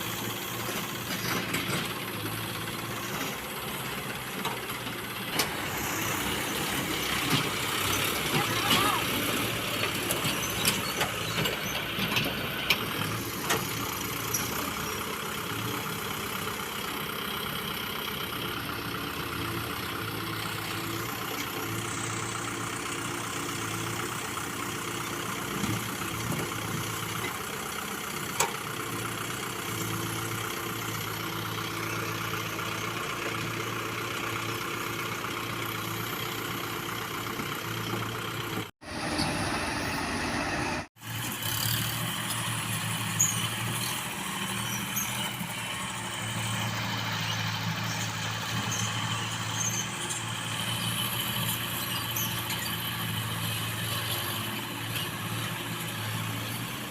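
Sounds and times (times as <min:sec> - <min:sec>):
diesel engine running: 0:00.0 - 0:56.9.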